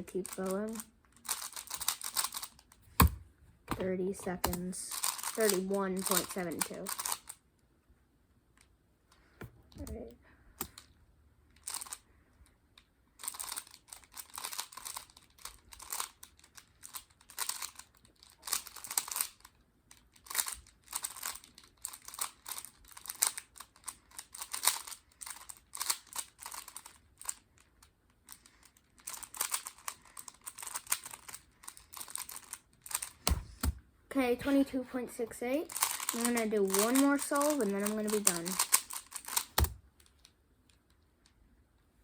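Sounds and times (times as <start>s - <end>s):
plastic puzzle cube clicking: 0.2s - 3.2s, 4.4s - 7.4s, 11.6s - 12.0s, 13.2s - 33.8s, 35.7s - 40.8s.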